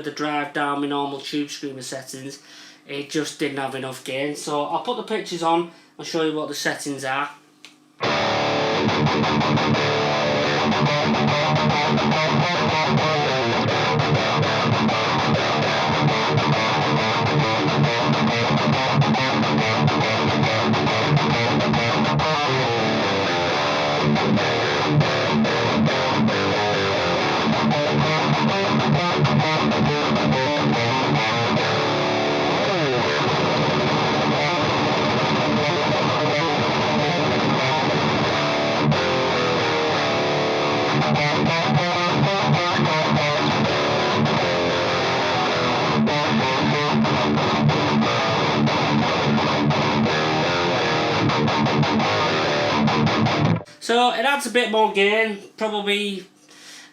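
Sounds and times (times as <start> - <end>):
distorted electric guitar riffing: 8.0 - 53.9.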